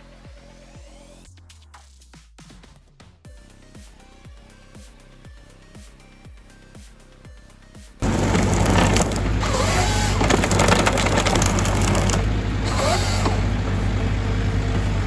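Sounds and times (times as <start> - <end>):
diesel engine running under load: 8.0 - 15.0
wood crushing and splintering: 8.0 - 15.0.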